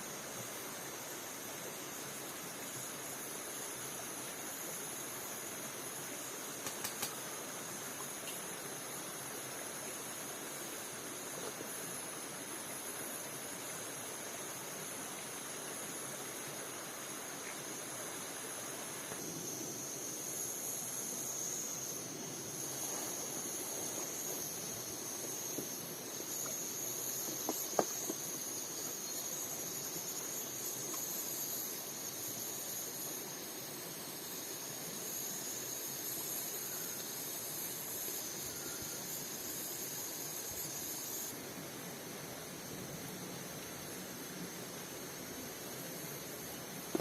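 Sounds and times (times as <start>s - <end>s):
insects calling: 0.0s - 47.0s
sharp click: 6.6s - 7.2s.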